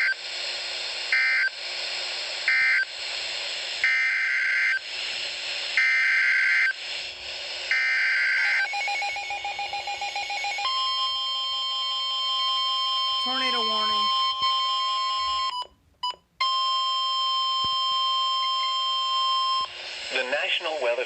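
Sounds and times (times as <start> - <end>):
radio hiss: 0.0 - 7.8, 13.2 - 14.2, 18.2 - 21.0.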